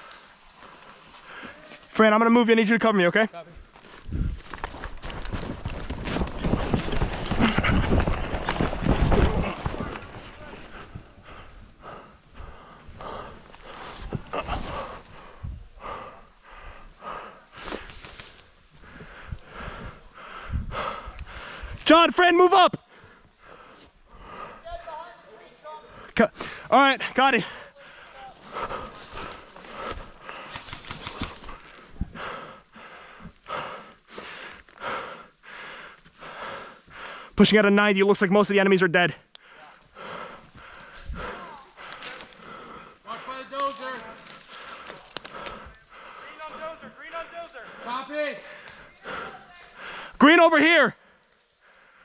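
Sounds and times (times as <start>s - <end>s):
running footfalls: 3.6s - 12.0s
person breathing hard: 9.7s - 21.8s, 22.9s - 24.7s, 27.4s - 37.4s, 39.4s - 43.4s, 44.2s - 47.0s, 47.6s - 50.2s, 51.6s - 52.0s.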